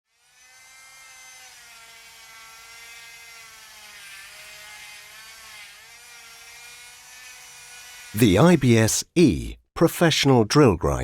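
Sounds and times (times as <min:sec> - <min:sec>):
small grinder motor whining: 0:00.1 - 0:08.1.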